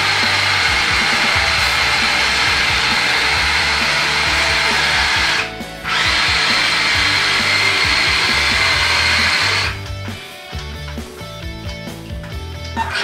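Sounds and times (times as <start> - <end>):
small electric motor whining: 0.0 - 9.8
background music: 0.0 - 13.0.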